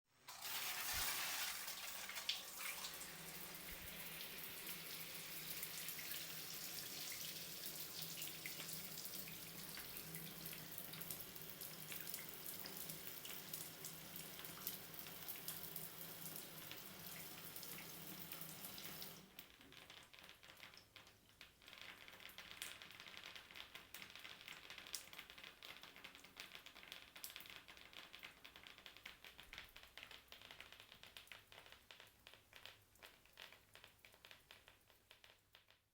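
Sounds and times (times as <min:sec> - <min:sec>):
shower spray hissing: 0:00.6 - 0:01.7
water dripping: 0:00.9 - 0:35.9.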